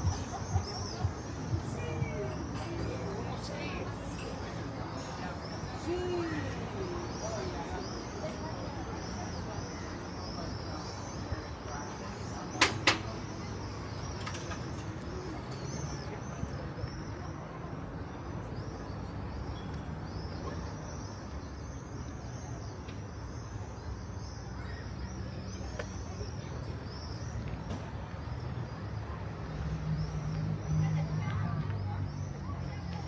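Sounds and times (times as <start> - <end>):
small birds chirping: 0.0 - 33.0.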